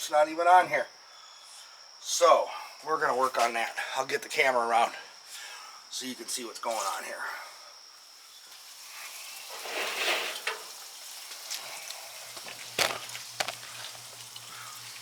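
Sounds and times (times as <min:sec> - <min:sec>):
camera handling rustle: 0:12.4 - 0:14.0.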